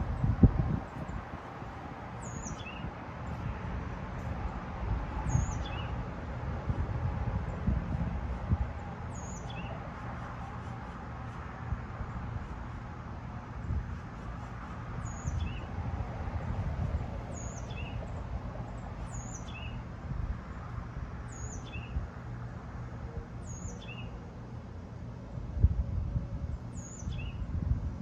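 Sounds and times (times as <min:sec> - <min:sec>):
ceiling fan running: 0:00.0 - 0:09.1.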